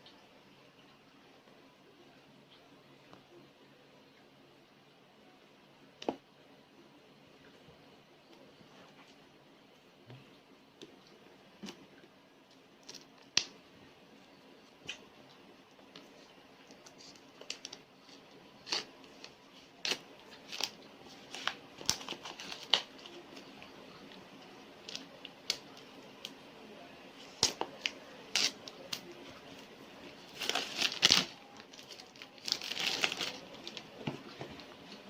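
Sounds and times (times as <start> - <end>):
plastic or paper crinkling: 16.7 - 23.4, 30.2 - 35.0.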